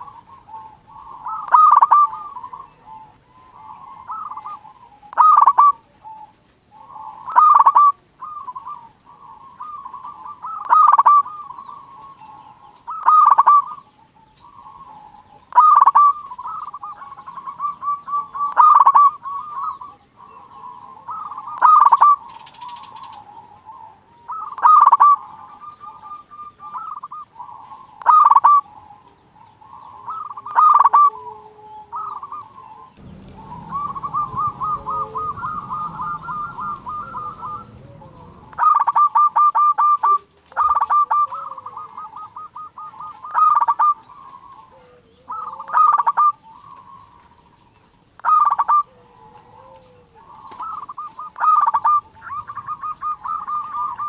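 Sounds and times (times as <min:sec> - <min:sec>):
dove cooing: 0:00.0 - 0:12.3, 0:29.8 - 0:47.1, 0:48.2 - 0:54.0.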